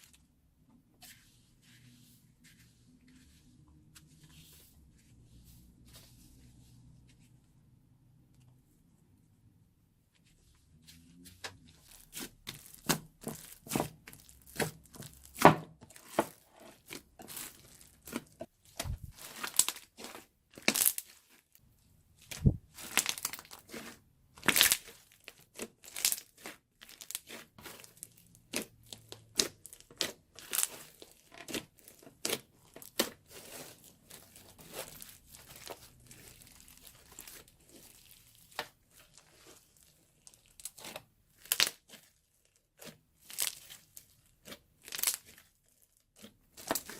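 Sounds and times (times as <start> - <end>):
slime crackling and popping: 12.1 - 21.4, 22.2 - 46.9.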